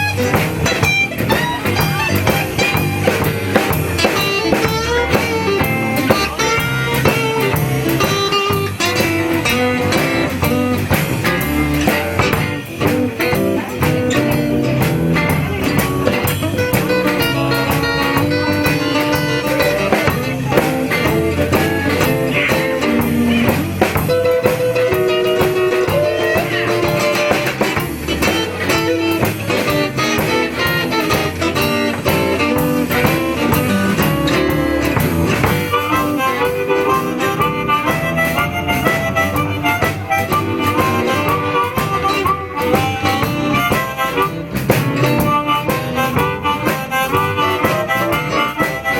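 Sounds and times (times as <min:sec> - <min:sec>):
blues band playing: 0:00.0 - 0:48.9
lead guitar solo with bent notes: 0:00.0 - 0:48.9.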